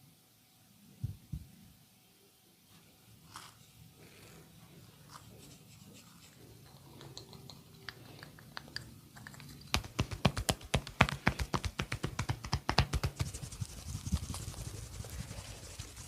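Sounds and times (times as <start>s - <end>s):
hands slapping body: 9.7s - 13.4s.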